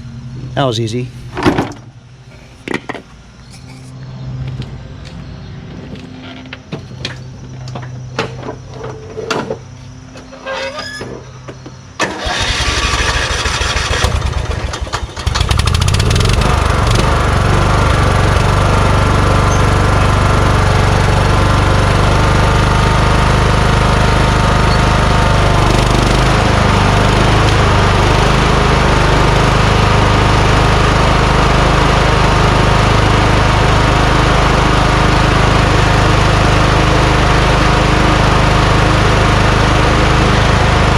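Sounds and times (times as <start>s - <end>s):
lawn tractor engine running: 9.6s - 40.9s
electric starter cranking engine: 12.0s - 40.9s.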